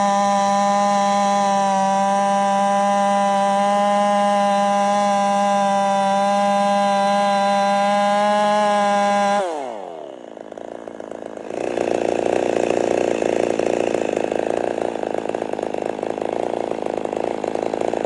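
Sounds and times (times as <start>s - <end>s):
chainsaw revving and idling: 0.0s - 18.0s.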